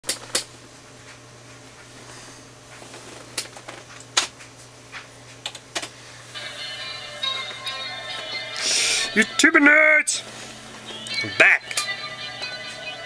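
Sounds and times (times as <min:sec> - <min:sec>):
faint steady hum: 0:00.1 - 0:13.0
music: 0:06.2 - 0:13.0.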